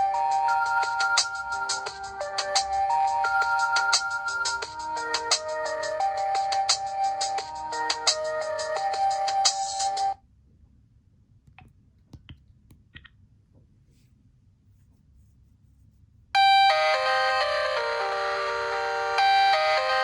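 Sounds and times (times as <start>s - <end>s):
phone ringtone melody: 0.0s - 10.2s, 16.4s - 20.0s.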